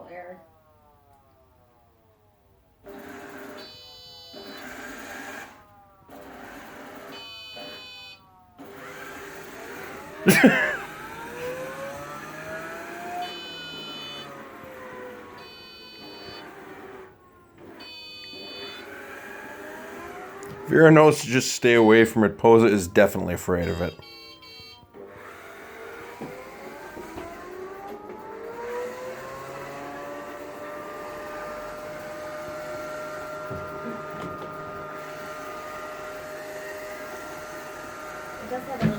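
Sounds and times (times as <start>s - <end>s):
robot vacuum motors whirring: 2.8s - 20.8s, 23.6s - 38.9s
high electronic tone: 23.0s - 24.8s.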